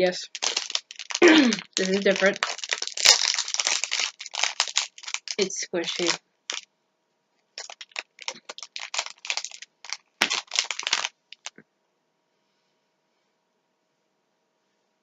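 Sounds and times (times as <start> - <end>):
plastic wrapper crinkling: 0.0 - 6.6, 7.6 - 11.6.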